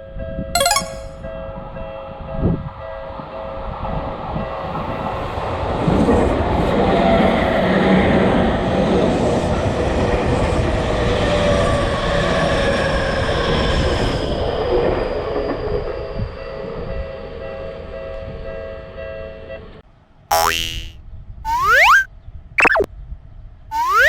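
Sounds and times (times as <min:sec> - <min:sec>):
high whine falling in pitch: 0:20.3 - 0:22.9.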